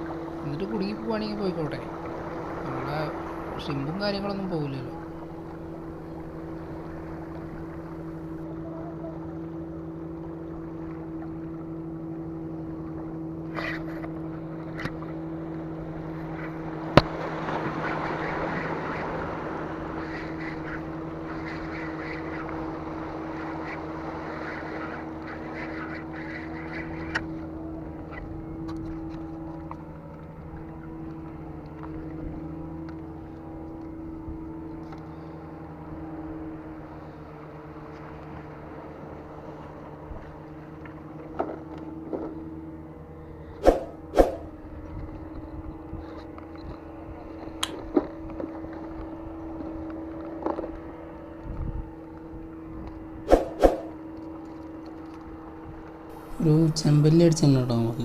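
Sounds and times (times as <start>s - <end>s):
boat engine humming: 0.0s - 58.0s.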